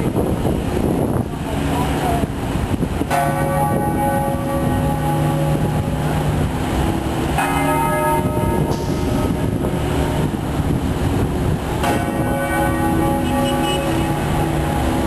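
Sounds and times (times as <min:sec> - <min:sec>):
steady low rumble: 0:00.0 - 0:15.0
bell tolling: 0:03.1 - 0:10.5.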